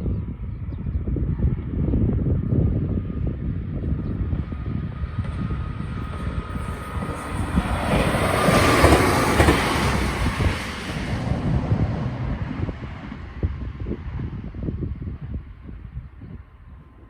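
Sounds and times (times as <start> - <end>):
train passing: 3.6 - 14.7.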